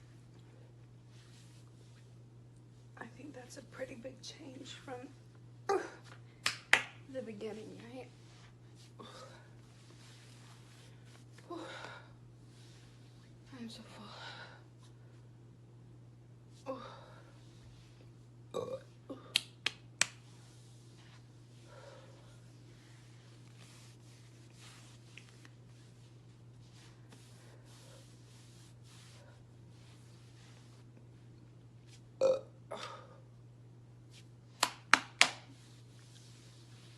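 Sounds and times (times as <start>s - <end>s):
steady low hum: 0.0s - 36.9s
woman burping: 18.5s - 18.9s, 32.2s - 33.1s.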